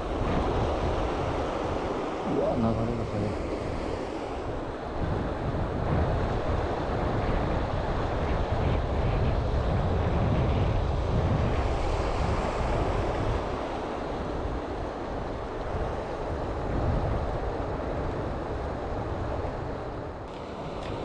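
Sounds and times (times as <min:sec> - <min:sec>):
wind buffeting microphone: 0:00.0 - 0:21.0
fast-flowing water: 0:02.2 - 0:03.6.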